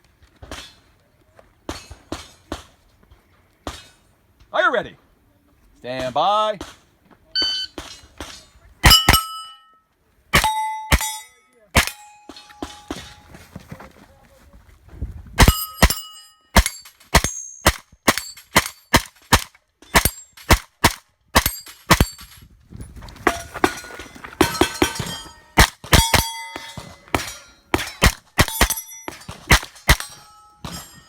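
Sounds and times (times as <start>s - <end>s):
steel target plates ringing: 7.4s - 7.8s, 8.8s - 13.2s, 15.4s - 19.1s, 19.8s - 20.6s, 21.4s - 22.4s, 23.3s - 31.0s
rapid gunshots: 25.6s - 30.2s.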